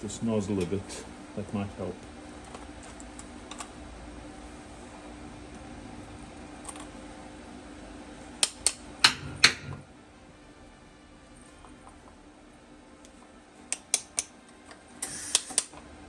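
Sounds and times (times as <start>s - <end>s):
low steady hum: 0.0s - 15.1s.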